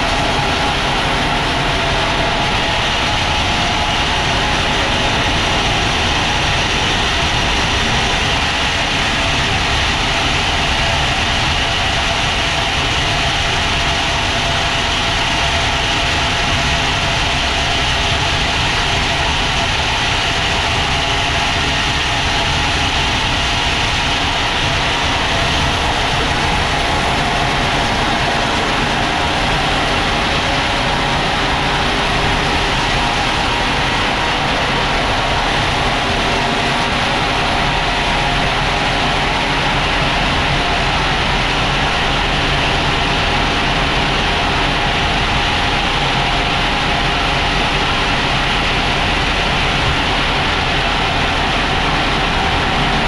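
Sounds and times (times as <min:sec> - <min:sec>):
sawmill machinery drone: 0:00.0 - 0:53.0.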